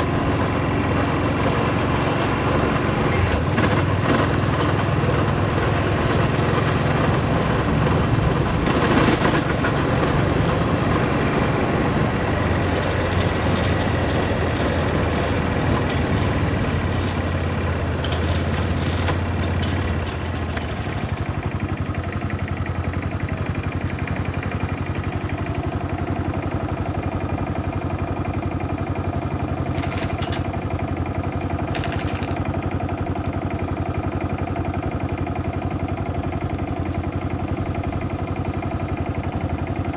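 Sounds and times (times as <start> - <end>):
motorcycle engine idling: 0.0 - 39.9
short clicks or rattles: 31.7 - 32.4.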